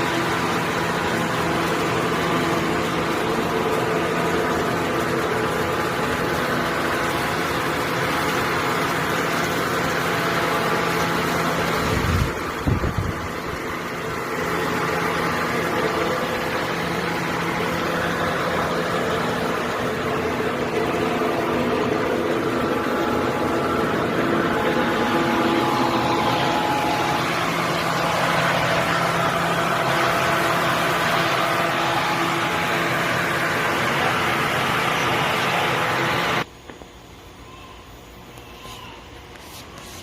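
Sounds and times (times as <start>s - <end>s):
blower fan running: 0.0s - 40.0s.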